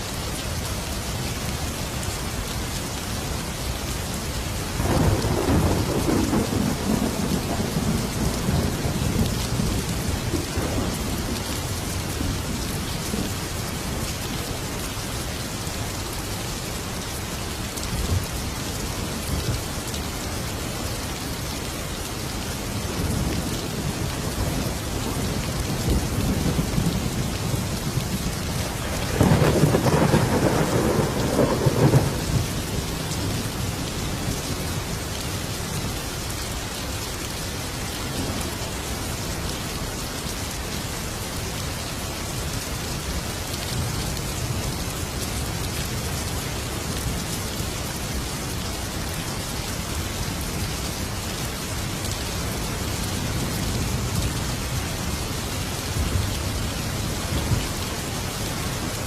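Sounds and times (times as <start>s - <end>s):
heavy rain: 0.0s - 59.0s
rolling thunder: 4.8s - 11.4s, 24.4s - 33.4s.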